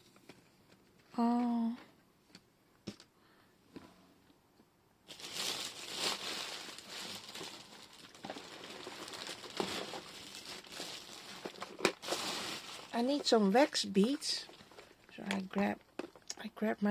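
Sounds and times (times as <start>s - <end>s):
packaging crinkling: 5.1s - 15.1s.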